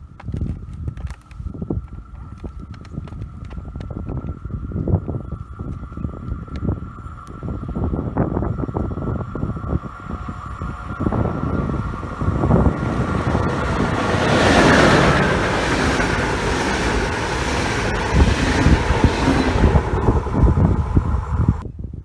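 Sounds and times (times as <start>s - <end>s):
wind buffeting microphone: 0.0s - 22.0s
electric train passing: 4.1s - 21.6s.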